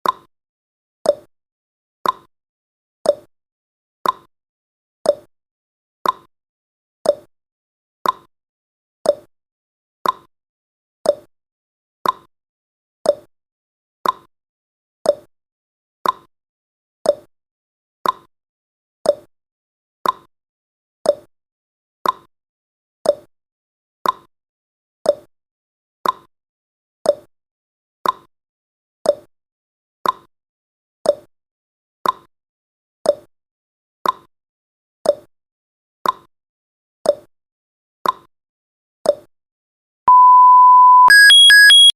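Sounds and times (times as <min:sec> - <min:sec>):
timer ticking: 0:40.1 - 0:41.9.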